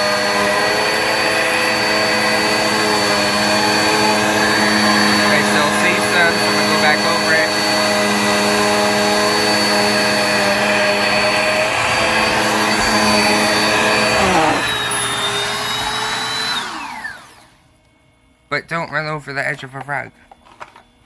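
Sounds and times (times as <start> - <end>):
vacuum brushroll straining: 0.0 - 16.3
upright vacuum running: 0.0 - 17.9.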